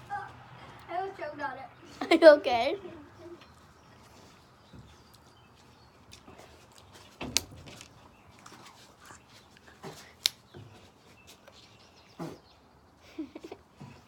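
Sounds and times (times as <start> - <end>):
chewing: 4.9 - 10.5.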